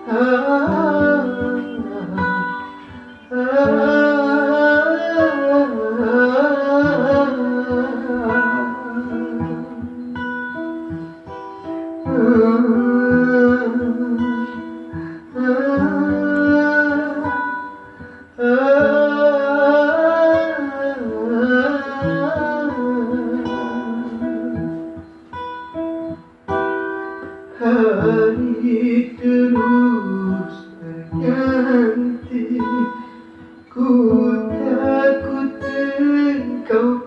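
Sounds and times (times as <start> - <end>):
person singing: 0.0 - 25.4, 26.0 - 37.0
acoustic guitar picking: 0.0 - 37.0.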